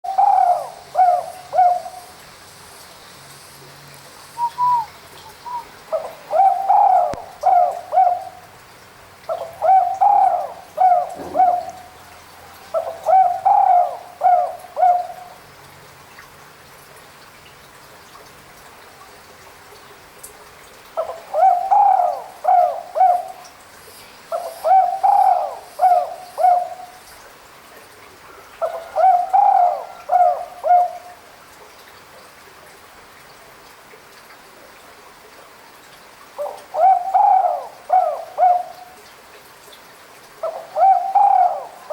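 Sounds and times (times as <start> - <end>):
dove cooing: 0.1 - 2.1, 4.4 - 8.5, 9.3 - 15.4, 21.0 - 23.5, 24.3 - 27.0, 28.6 - 31.1, 36.4 - 39.0, 40.4 - 41.9.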